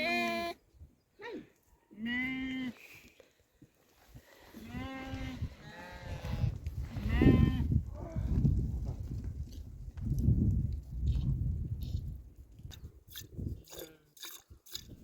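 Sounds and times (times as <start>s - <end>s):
sheep bleating: 0.0s - 0.6s, 2.0s - 2.8s.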